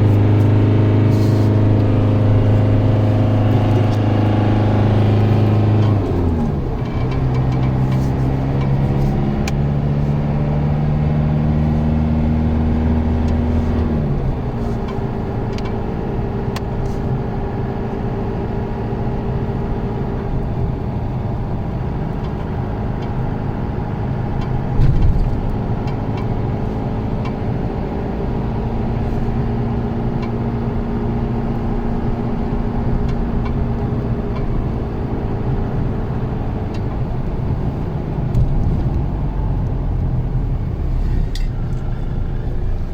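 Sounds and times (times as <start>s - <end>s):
car engine droning: 0.0s - 42.9s
road noise: 0.0s - 42.9s
car bump: 24.6s - 25.6s.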